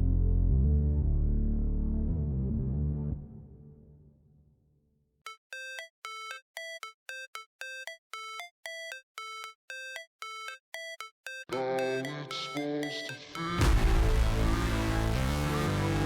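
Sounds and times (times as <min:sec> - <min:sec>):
electronic ringtone beeps: 0:05.3 - 0:13.6
background music: 0:11.5 - 0:16.0.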